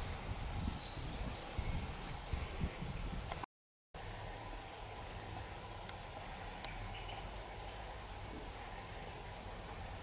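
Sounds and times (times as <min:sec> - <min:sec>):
steady hiss and low rumble: 0:04.0 - 0:10.0.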